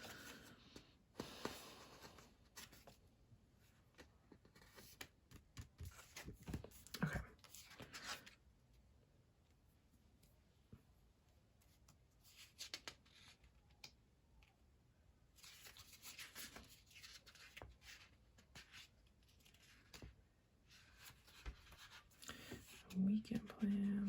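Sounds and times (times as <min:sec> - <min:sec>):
paper pages rustling: 0:15.4 - 0:23.8.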